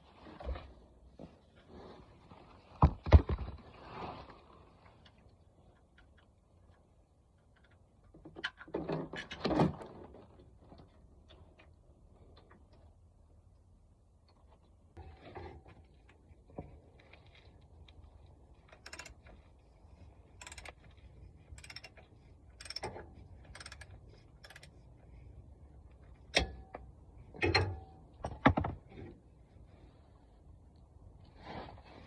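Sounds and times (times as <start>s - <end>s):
metallic tool clicks and clinks: 18.8s - 19.2s, 20.4s - 20.8s, 21.6s - 22.0s, 22.6s - 23.0s, 23.6s - 24.8s.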